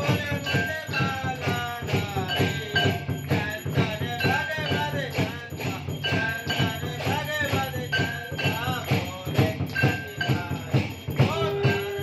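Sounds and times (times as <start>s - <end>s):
jingling bells: 0.0s - 12.0s.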